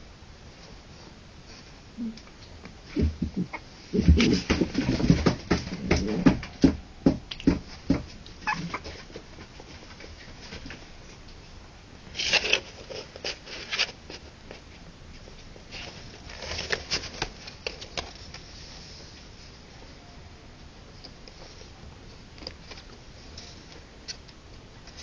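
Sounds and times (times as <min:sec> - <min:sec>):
puppies pattering taps: 0:04.1 - 0:09.6.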